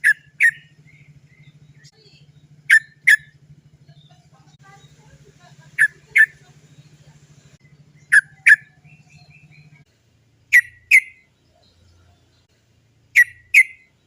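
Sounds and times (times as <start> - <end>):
bird giving sharp calls: 0.0 - 7.0, 7.7 - 9.8, 10.5 - 11.3, 13.1 - 14.0.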